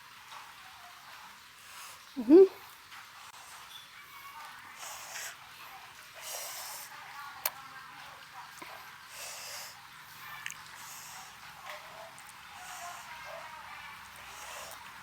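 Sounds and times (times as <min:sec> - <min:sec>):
close chewing mouth noises: 0:04.7 - 0:15.0.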